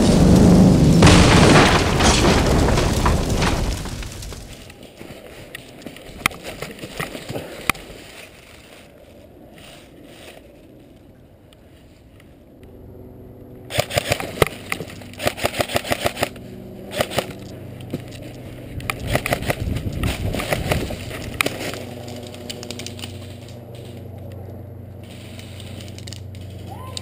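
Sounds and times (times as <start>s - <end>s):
low hum: 0.0s - 4.8s, 16.3s - 27.0s.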